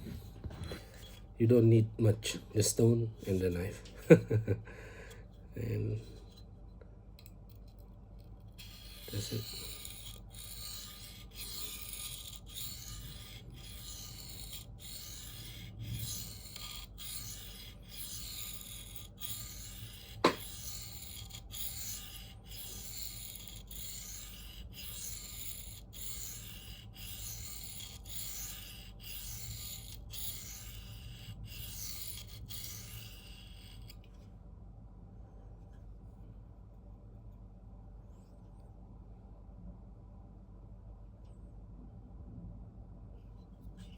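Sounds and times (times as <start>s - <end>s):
knife rasping on sharpening plate: 8.6s - 34.0s.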